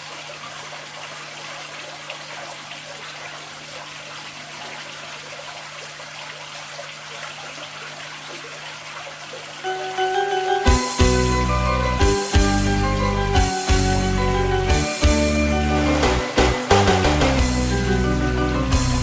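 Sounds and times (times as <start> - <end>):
waterfall splashing and trickling: 0.0 - 19.0
music: 9.6 - 19.0.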